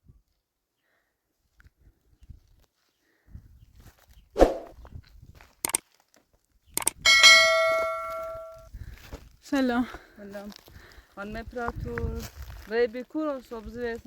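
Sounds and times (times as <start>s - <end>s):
sharp clicks: 5.6s - 5.8s, 6.8s - 8.5s
metal object ringing: 7.1s - 8.6s.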